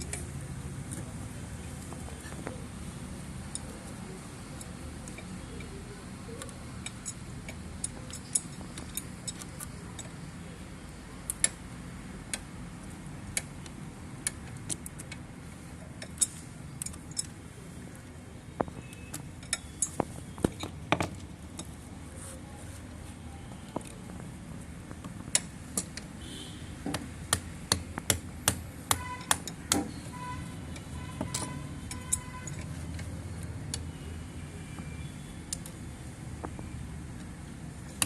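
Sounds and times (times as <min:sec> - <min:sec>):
hand tools and pipe clicking: 0:06.4 - 0:10.2, 0:11.3 - 0:11.6, 0:15.9 - 0:17.4, 0:18.6 - 0:21.8, 0:24.9 - 0:26.2, 0:26.8 - 0:33.1.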